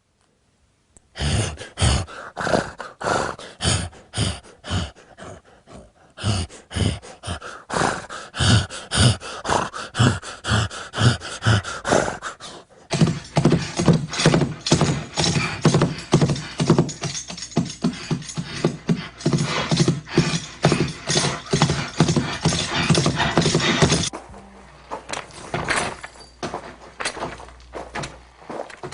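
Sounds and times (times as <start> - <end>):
hoofbeats clip-clopping: 12.9 - 24.1.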